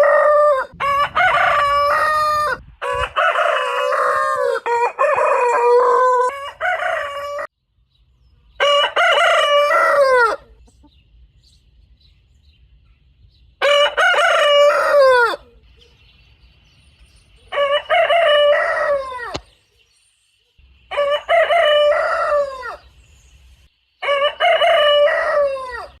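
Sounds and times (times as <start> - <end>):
rooster crowing: 0.0 - 7.5, 8.6 - 10.6, 13.6 - 15.6, 17.5 - 19.4, 20.9 - 22.9, 24.0 - 26.0.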